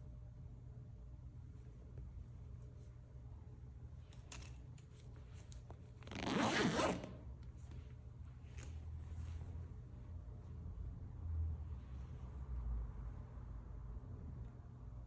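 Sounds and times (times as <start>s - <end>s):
faint handling clicks and rustles: 3.9s - 6.2s, 7.4s - 9.8s
zipper pulled: 6.0s - 7.3s.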